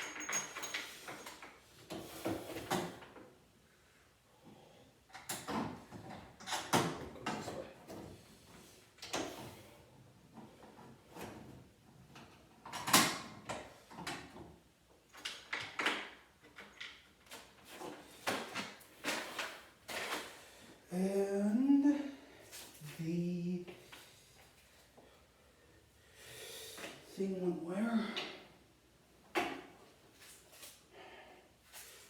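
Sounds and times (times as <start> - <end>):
objects knocking and clattering: 0.0 - 1.6.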